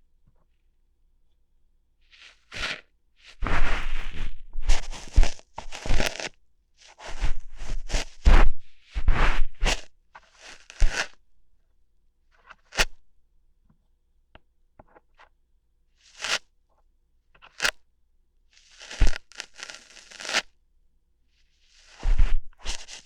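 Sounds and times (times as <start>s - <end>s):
crackling hair plucking: 18.6s - 20.4s.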